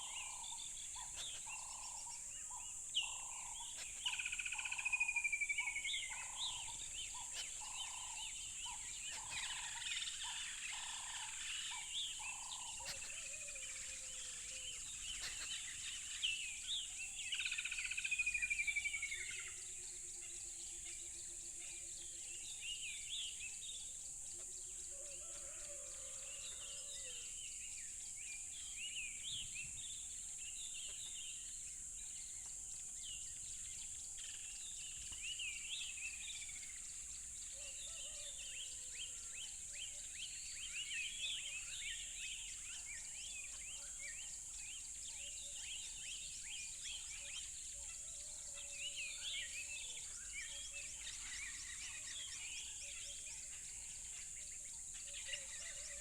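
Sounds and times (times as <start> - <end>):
lower repeated bird calls: 0.0 - 16.3
birds chirping and singing: 0.0 - 19.6.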